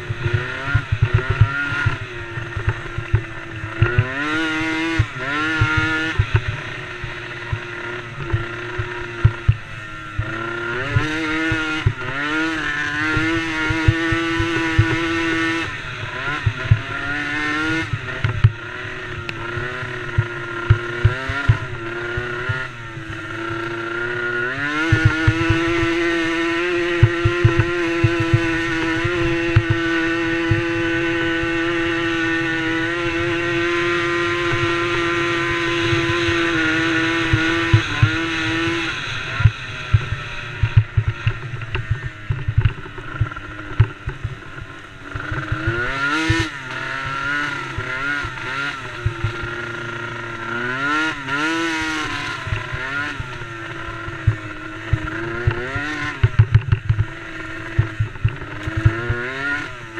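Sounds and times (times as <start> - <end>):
quad engine revving: 0.0 - 59.9.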